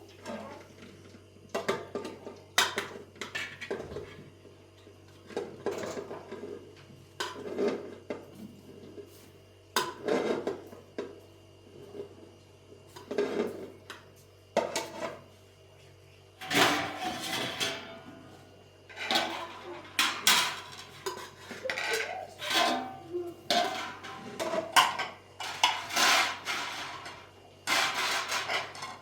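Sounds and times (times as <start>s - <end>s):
dishes and pots clattering: 16.4s - 18.2s, 18.9s - 29.0s.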